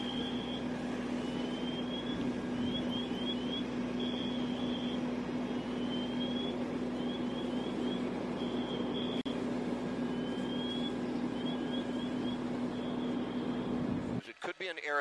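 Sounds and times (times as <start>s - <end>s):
electronic alarm chirping and sweeping: 0.0s - 9.2s
mechanical drone: 0.0s - 14.2s.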